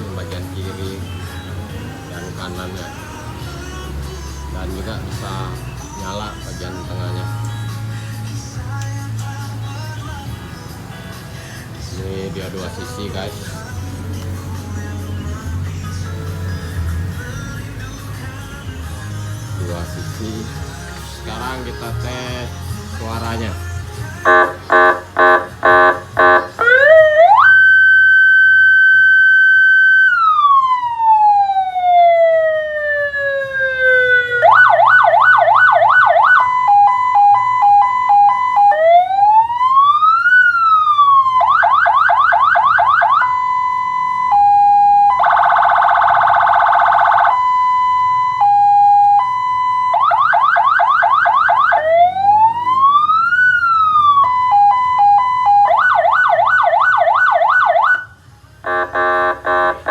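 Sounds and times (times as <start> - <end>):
buzzy horn blast: 24.2 - 26.9, 58.6 - 59.9
electronic police siren: 24.3 - 59.9.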